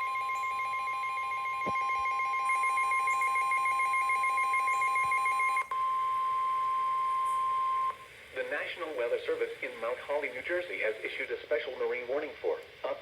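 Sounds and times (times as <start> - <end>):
steady alarm tone: 0.0 - 8.0.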